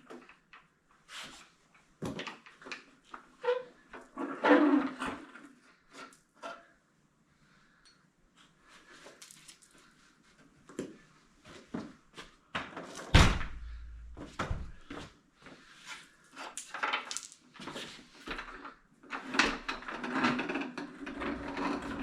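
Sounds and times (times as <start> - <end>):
scraping and rattling: 19.2 - 22.0.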